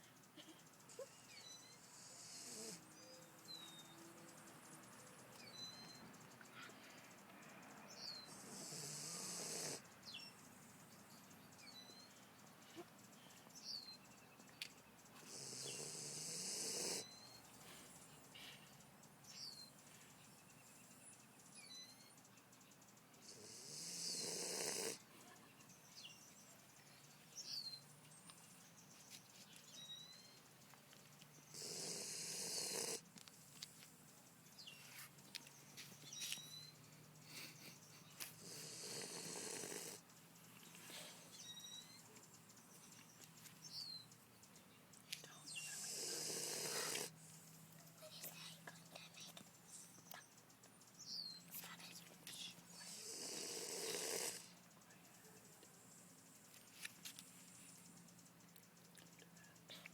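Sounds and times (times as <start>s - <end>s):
pet snoring: 1.8s - 2.9s, 8.1s - 9.8s, 15.2s - 17.3s, 23.2s - 25.1s, 31.5s - 33.1s, 38.4s - 40.1s, 45.5s - 47.3s, 52.8s - 54.6s.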